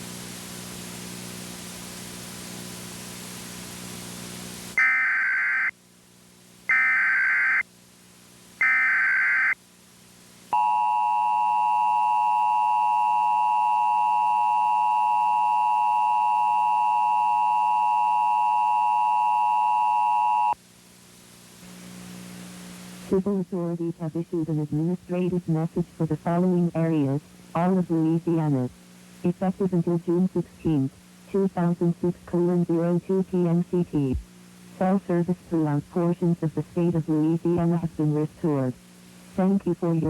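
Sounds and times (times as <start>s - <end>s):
steady hiss with low hum: 0.0s - 40.0s.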